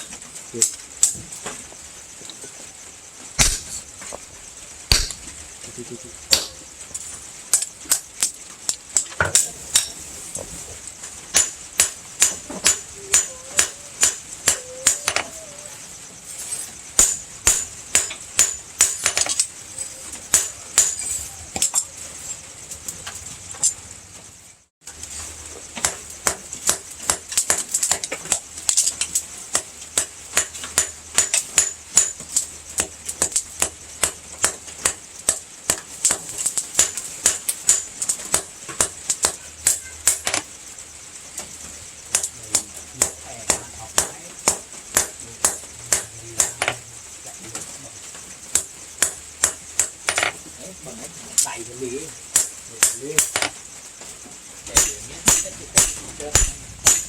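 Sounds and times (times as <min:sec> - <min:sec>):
hammer striking metal on anvil: 0:09.2 - 0:10.0, 0:11.3 - 0:15.2, 0:17.0 - 0:19.5, 0:20.3 - 0:21.8, 0:43.0 - 0:46.8, 0:54.8 - 0:57.0.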